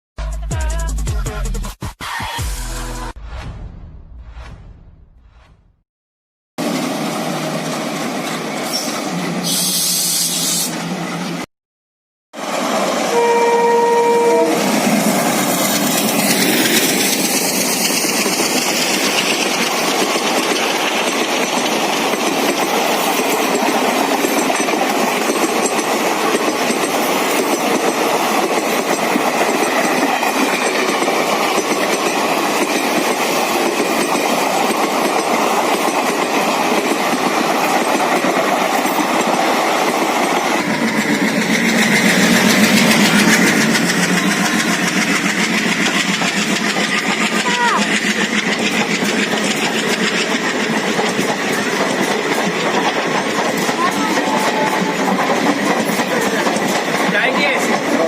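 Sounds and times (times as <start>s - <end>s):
train rumbling by: 6.6s - 11.5s, 12.4s - 58.0s
locomotive horn blast: 13.1s - 14.7s
locomotive engine running: 14.1s - 58.0s.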